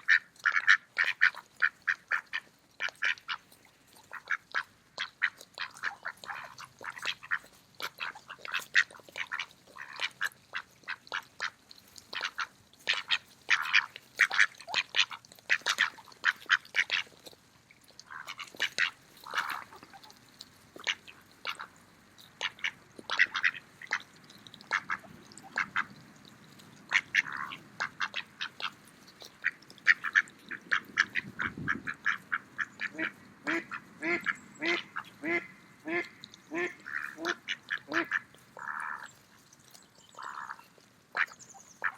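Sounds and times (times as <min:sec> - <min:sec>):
ducks quacking: 0:00.0 - 0:03.4, 0:04.0 - 0:17.2, 0:18.0 - 0:20.1, 0:20.8 - 0:21.8, 0:22.4 - 0:25.9, 0:26.9 - 0:39.1, 0:40.2 - 0:41.9.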